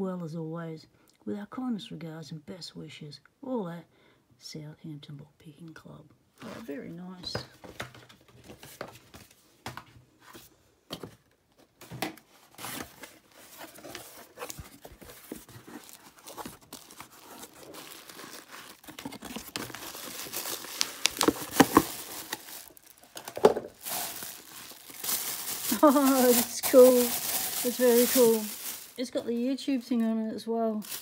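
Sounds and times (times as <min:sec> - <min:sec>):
handling rustles and clicks: 0:12.1 - 0:29.0
wrapping paper crinkling and tearing: 0:12.4 - 0:29.8, 0:30.7 - 0:31.0.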